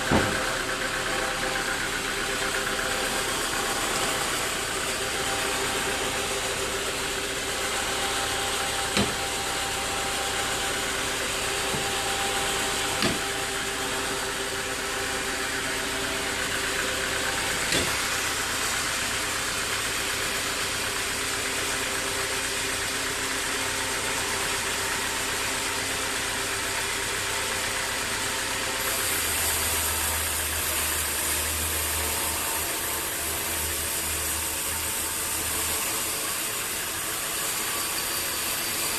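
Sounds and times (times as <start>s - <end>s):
sawmill machinery running: 0.0s - 38.9s
sharp knocks: 9.0s - 9.3s, 13.0s - 13.3s.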